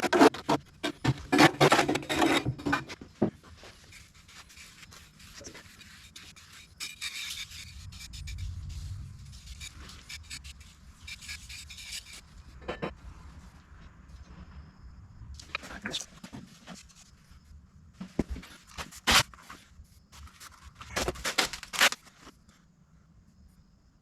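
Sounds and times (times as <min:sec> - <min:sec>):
tool scraping wet concrete: 0:00.0 - 0:12.6.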